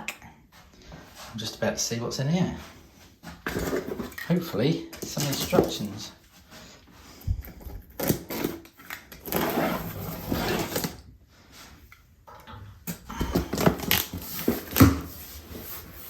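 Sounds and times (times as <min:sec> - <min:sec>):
plastic and cardboard rustling: 0:02.4 - 0:11.9, 0:13.0 - 0:16.0.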